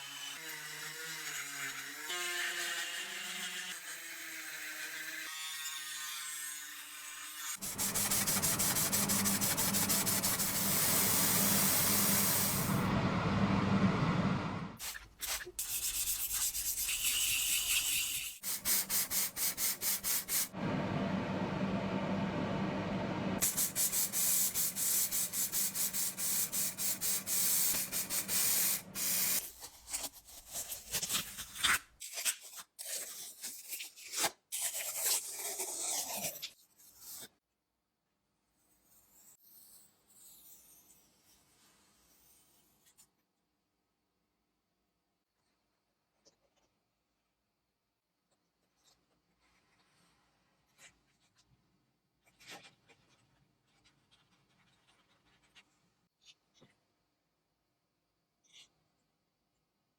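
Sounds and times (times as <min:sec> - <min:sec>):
rapid rubbing or scraping: 0:07.6 - 0:12.8
steady low hum: 0:07.6 - 0:14.8, 0:20.6 - 0:24.8.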